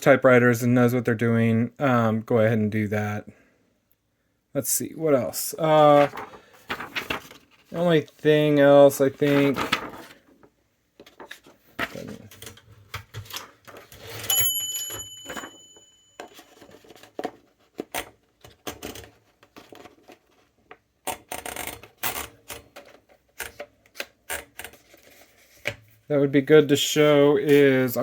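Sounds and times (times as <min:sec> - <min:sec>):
typewriter bell ringing: 0:14.1 - 0:16.8.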